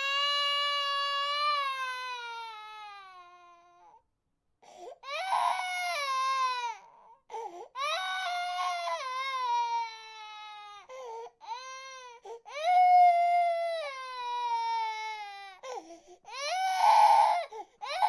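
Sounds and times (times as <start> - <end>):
baby crying: 0.0 - 4.0, 5.0 - 18.0.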